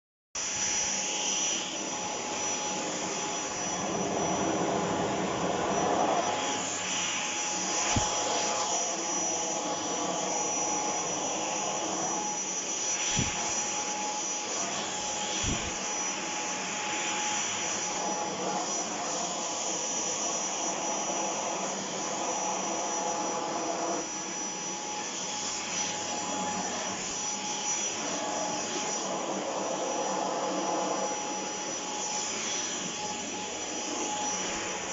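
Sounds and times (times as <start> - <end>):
vacuum cleaner running: 0.4 - 34.9.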